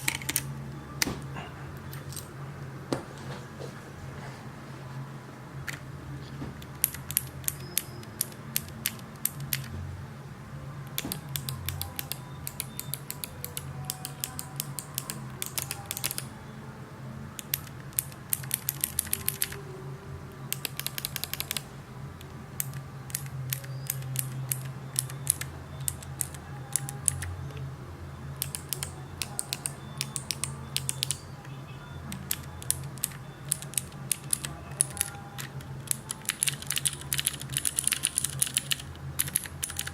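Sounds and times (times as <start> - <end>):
mechanical keyboard clicking: 0.0 - 0.5, 6.6 - 9.7, 10.9 - 16.3, 17.4 - 19.6, 20.5 - 21.6, 22.2 - 27.6, 28.4 - 31.2, 32.2 - 39.9.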